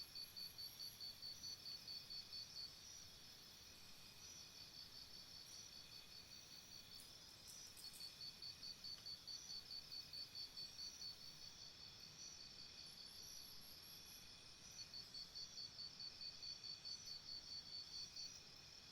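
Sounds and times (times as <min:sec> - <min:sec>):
faint ticks: 0:08.9 - 0:09.2.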